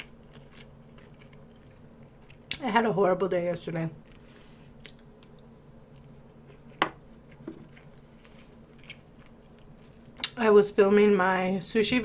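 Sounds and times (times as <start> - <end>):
quiet chewing: 0.0 - 2.6, 4.0 - 10.4.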